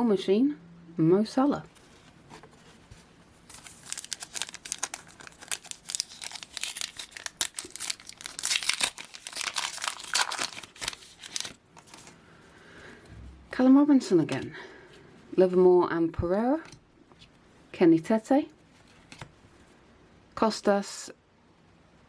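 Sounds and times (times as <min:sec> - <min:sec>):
plastic wrapper crinkling: 0:03.4 - 0:12.2.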